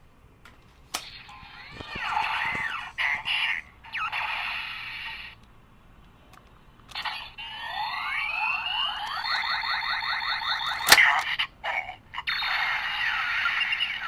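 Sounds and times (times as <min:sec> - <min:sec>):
pulsing electronic whir: 0:07.0 - 0:10.9.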